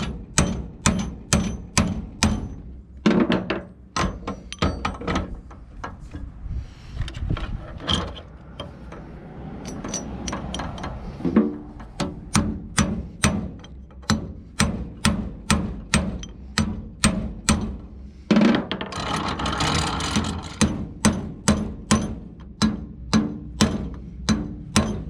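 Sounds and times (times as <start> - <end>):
hammer blows on metal stud: 0.0 - 4.9, 11.3 - 18.0, 20.6 - 25.0.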